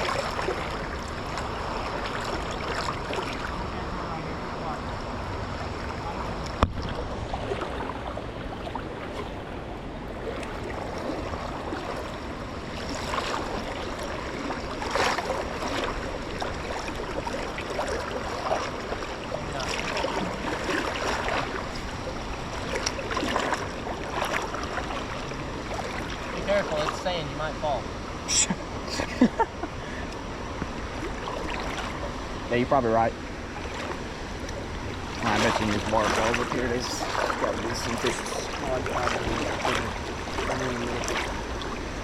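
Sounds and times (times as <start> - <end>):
splashing from wading: 0.0 - 4.8, 5.7 - 27.5, 28.3 - 32.4, 33.2 - 42.0
stream water running: 0.0 - 42.0.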